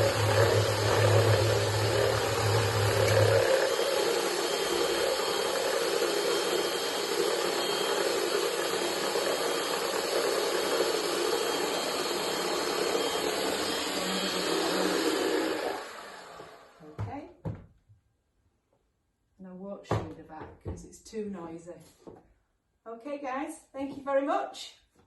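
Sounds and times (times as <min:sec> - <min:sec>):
electric whisk whirring: 0:00.0 - 0:16.9.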